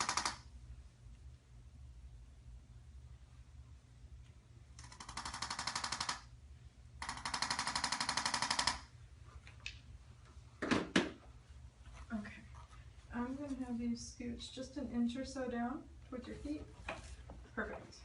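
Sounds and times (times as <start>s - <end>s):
rapid mechanical clicks: 0.0s - 0.4s, 4.8s - 6.3s, 7.0s - 8.9s.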